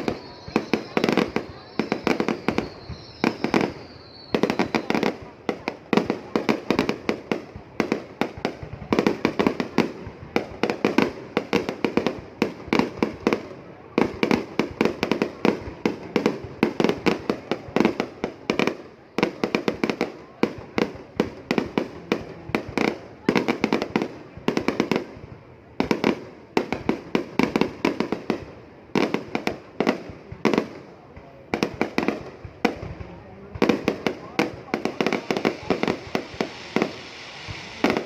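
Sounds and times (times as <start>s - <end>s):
fireworks bursting: 0.0s - 38.0s.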